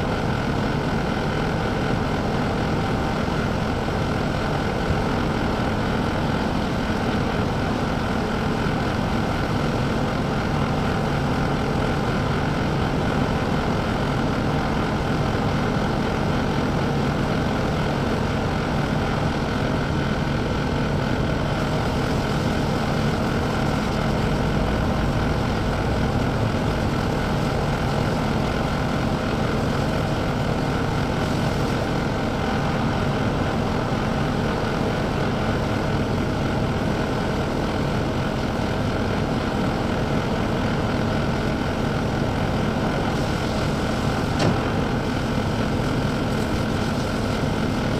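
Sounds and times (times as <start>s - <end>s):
diesel engine droning: 16.2s - 35.2s.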